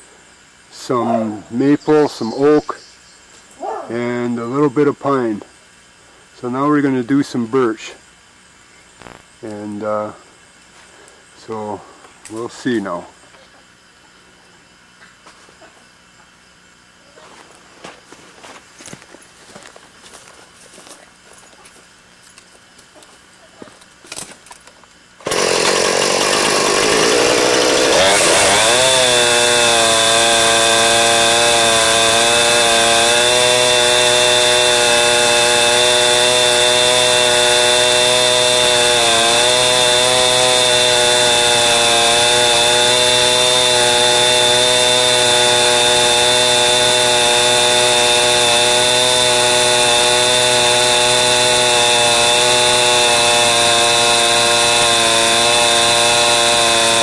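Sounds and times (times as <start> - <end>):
chainsaw cutting through log: 25.2 - 57.0.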